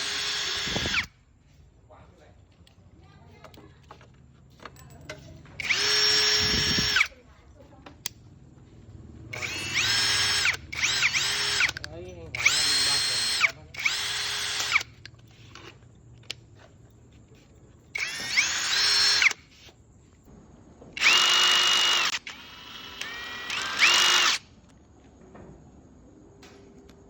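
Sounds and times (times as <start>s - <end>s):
cordless drill motor whining: 0.0s - 1.1s, 5.6s - 7.2s, 9.3s - 15.2s, 18.0s - 19.4s, 21.0s - 24.4s.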